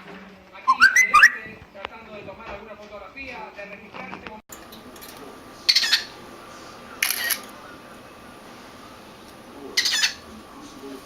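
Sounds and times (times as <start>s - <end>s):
cockatiel chirping: 0.7s - 1.5s.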